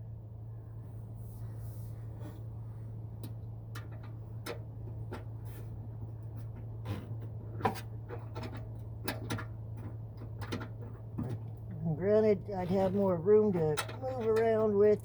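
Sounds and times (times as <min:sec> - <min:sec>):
steady low hum: 0:00.0 - 0:15.0
hand tools clicking and tapping: 0:13.7 - 0:14.7.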